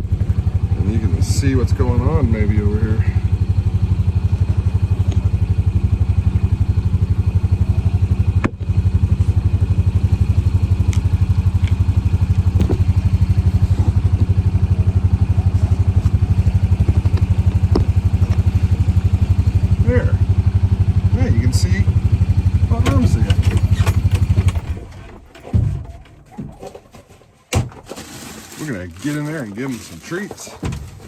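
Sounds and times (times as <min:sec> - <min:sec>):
single-cylinder engine running: 0:00.0 - 0:26.1.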